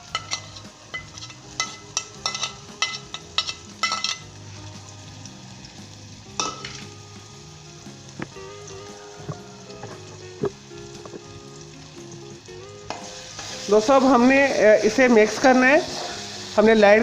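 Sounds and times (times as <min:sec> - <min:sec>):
spoon clinking against pot: 0:00.0 - 0:04.3, 0:06.4 - 0:06.9
food sizzling in a pot: 0:00.0 - 0:17.0.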